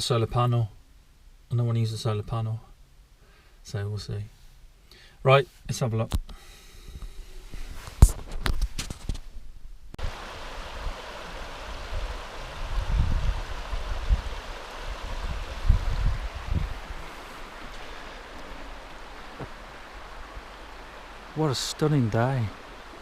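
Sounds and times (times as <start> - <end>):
wind gusting on microphone: 10.0 - 23.0.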